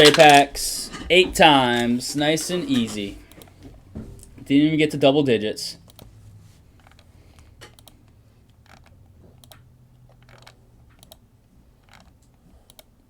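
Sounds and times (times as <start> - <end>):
computer mouse clicks: 6.8 - 11.2, 11.8 - 12.9.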